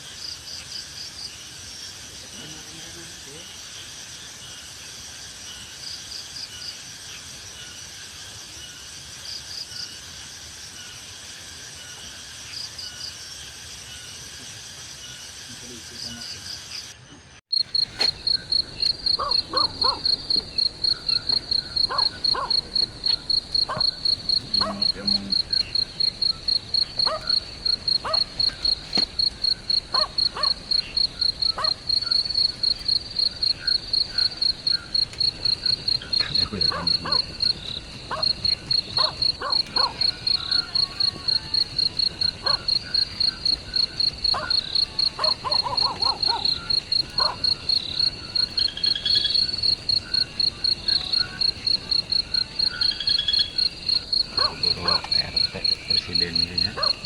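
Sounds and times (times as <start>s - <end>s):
cricket chirping: 0.0s - 57.0s
night animal calls: 15.0s - 57.0s.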